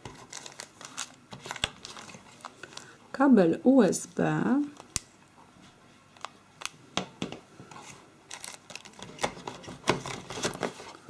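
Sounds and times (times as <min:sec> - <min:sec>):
plastic and cardboard rustling: 0:00.0 - 0:02.9, 0:07.6 - 0:11.0.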